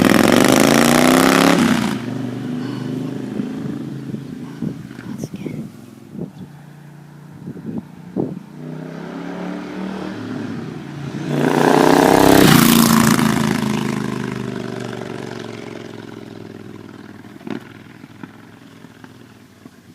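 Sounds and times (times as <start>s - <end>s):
motorcycle accelerating past: 0.0s - 4.7s, 6.4s - 19.9s.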